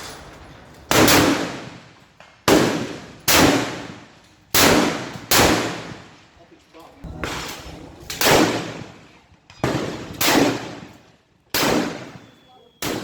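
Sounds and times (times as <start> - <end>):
rifle shots echoing: 0.0 - 6.4, 7.0 - 13.0.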